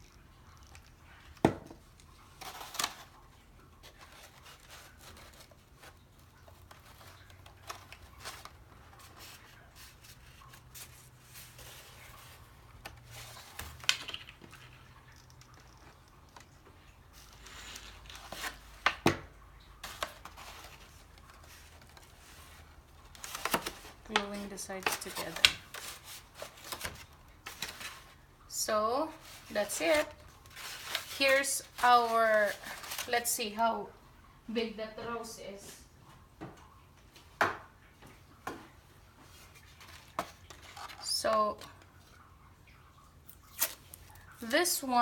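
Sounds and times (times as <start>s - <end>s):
paper rustling and crinkling: 0.6s - 28.2s, 29.0s - 33.5s, 39.2s - 42.3s.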